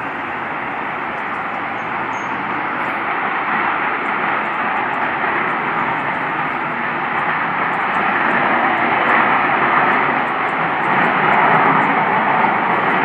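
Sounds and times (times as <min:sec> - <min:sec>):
jet-like roar from the sky: 0:00.0 - 0:13.0.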